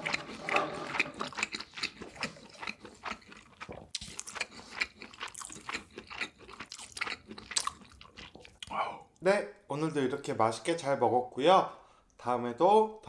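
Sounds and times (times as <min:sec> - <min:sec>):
chewing crunchy food: 0:00.0 - 0:08.8.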